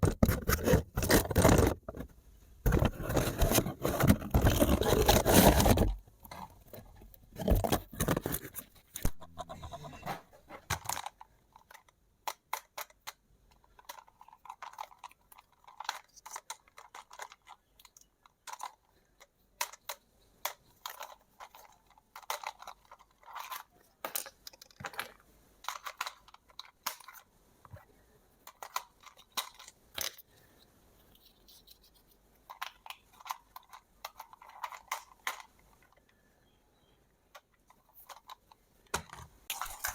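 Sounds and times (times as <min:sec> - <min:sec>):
packaging crinkling and tearing: 0:02.7 - 0:06.0, 0:39.5 - 0:39.9.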